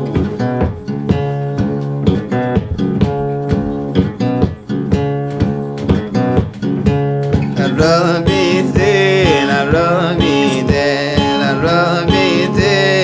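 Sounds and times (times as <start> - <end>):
song with plucked guitar and beat: 0.0 - 13.0
person singing: 7.5 - 13.0.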